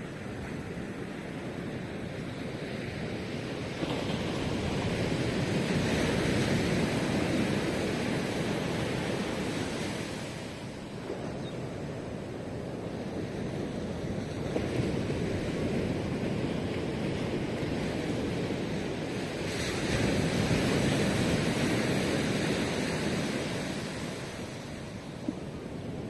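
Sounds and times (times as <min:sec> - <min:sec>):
steady hiss of the sea: 0:00.0 - 0:26.0
wave breaking on shore: 0:11.9 - 0:26.0.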